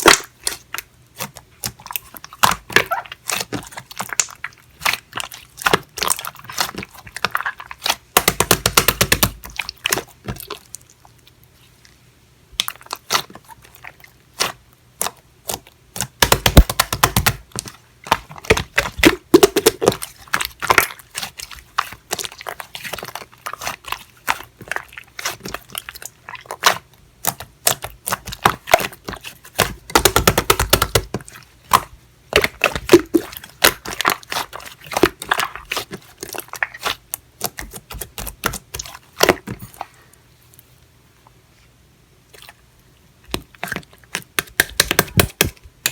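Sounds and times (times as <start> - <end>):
slime squeezed popping and clicking: 14.4 - 20.0.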